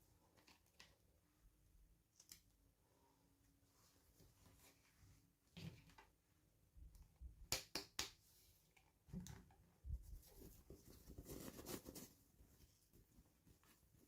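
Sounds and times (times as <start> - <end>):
soft rustling and scraping: 3.5 - 6.1, 9.8 - 14.0.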